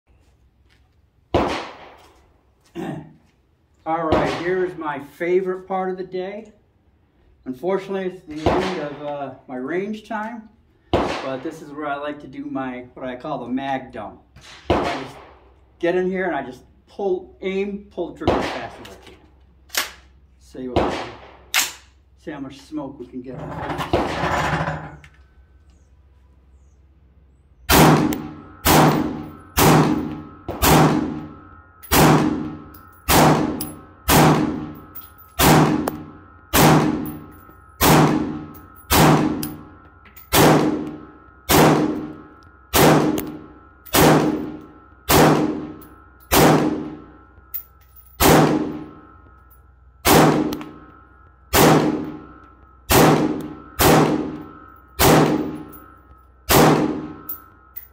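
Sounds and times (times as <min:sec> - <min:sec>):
gunshots with metallic clang: 0:01.3 - 0:02.0, 0:04.0 - 0:04.7, 0:08.3 - 0:09.1, 0:11.0 - 0:11.5, 0:14.4 - 0:15.5, 0:18.2 - 0:19.0, 0:20.7 - 0:21.8, 0:23.5 - 0:24.8, 0:27.7 - 0:47.2, 0:48.2 - 0:49.0, 0:50.0 - 0:50.8, 0:51.5 - 0:55.9, 0:56.5 - 0:57.5.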